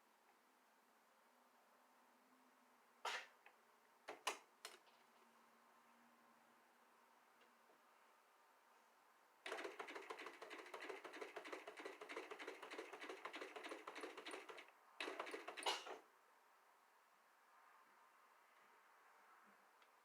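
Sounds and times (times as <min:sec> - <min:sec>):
sewing machine clattering: 0:09.5 - 0:16.0.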